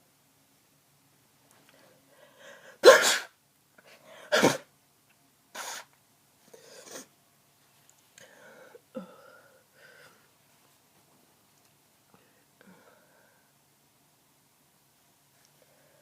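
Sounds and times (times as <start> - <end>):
soft breathing: 1.5 - 2.8, 8.1 - 10.8, 12.0 - 13.6, 15.3 - 16.0
person sneezing: 2.7 - 3.4, 4.3 - 4.7, 5.6 - 5.9.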